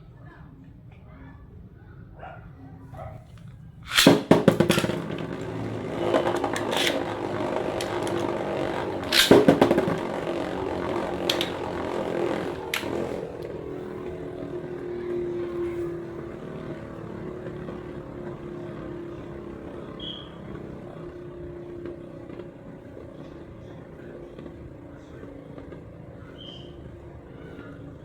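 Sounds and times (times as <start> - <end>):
tops striking with sharp knocks: 3.9 - 13.5
rapid rattle of launcher clicks: 3.9 - 21.2
spinning tops whirring: 3.9 - 23.2.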